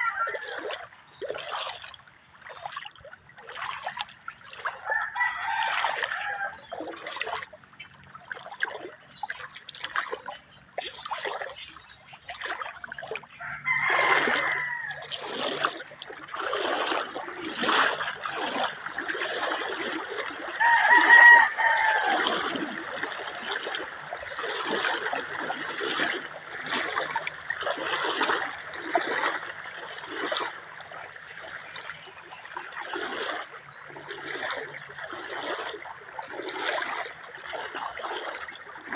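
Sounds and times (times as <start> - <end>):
rooster crowing: 0.0 - 0.6, 4.8 - 6.7, 13.4 - 15.3, 20.6 - 22.5
river water trickling and splashing: 0.0 - 38.9.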